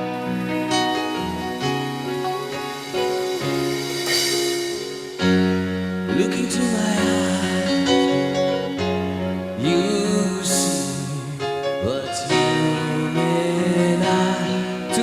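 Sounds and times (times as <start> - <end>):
sliding melody line: 0.0 - 8.6
sustained keyboard chords: 0.0 - 15.0.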